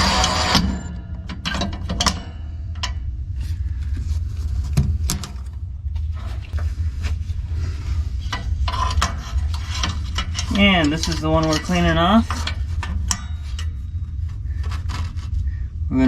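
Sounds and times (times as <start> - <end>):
steady low hum: 0.0 - 16.0
screwdriver and metal parts clicking: 8.3 - 13.8.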